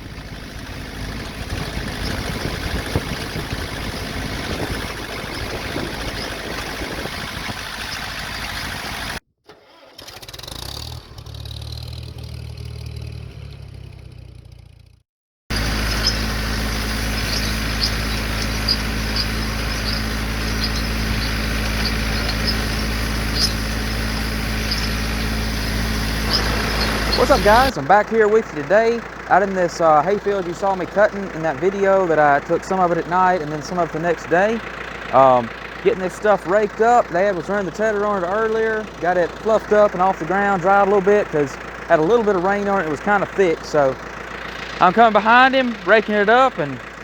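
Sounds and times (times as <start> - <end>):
tractor engine running: 0.0 - 47.0
light irregular ticking: 15.5 - 47.0.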